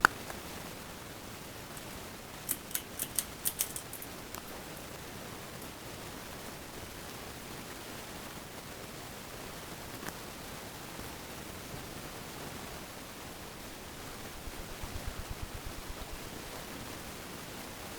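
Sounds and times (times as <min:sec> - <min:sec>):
light sharp clicks: 0:01.7 - 0:04.9.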